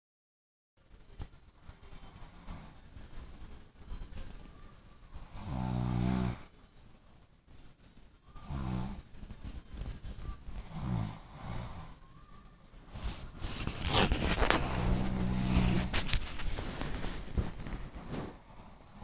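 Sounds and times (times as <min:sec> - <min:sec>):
quiet breathing: 0:01.7 - 0:19.0.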